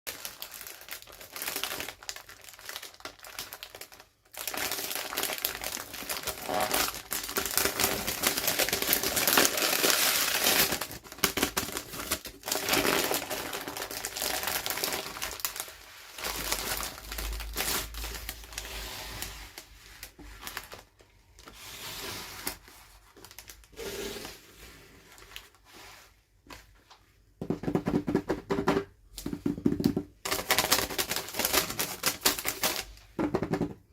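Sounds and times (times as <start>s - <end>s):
packaging tearing: 0.1s - 19.3s, 30.3s - 33.0s
packaging crinkling and rustling: 0.1s - 25.7s, 29.9s - 33.1s.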